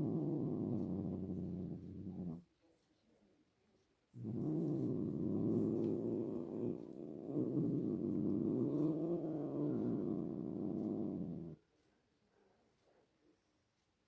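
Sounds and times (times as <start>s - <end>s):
cat low drawn-out vocalizing: 0.0s - 2.4s, 4.2s - 11.6s.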